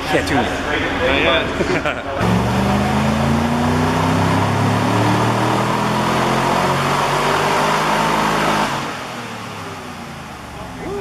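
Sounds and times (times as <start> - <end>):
car engine revving under load: 2.2 - 11.0.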